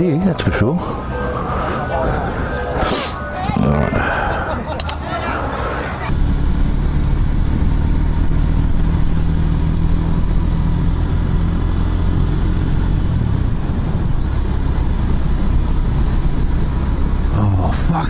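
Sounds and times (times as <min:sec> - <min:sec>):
motorcycle engine running: 0:06.1 - 0:17.4.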